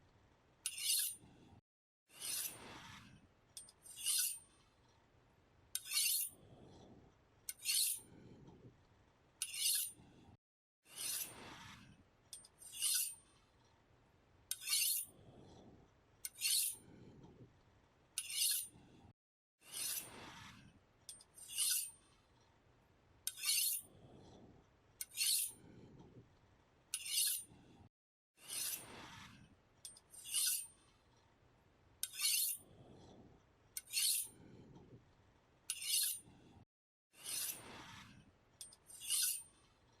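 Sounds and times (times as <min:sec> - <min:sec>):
knife sharpening scrapes: 0:00.7 - 0:01.2, 0:02.1 - 0:02.7, 0:03.6 - 0:04.4, 0:05.8 - 0:06.4, 0:07.5 - 0:08.1, 0:09.4 - 0:10.0, 0:10.9 - 0:11.4, 0:12.6 - 0:13.2, 0:14.5 - 0:15.1, 0:16.3 - 0:16.8, 0:18.2 - 0:18.7, 0:19.6 - 0:20.2, 0:21.4 - 0:22.0, 0:23.3 - 0:23.9, 0:25.0 - 0:25.6, 0:27.0 - 0:27.5, 0:28.4 - 0:29.1, 0:29.9 - 0:30.7, 0:32.0 - 0:32.7, 0:33.8 - 0:34.4, 0:35.7 - 0:36.3, 0:37.2 - 0:38.0, 0:38.6 - 0:39.5.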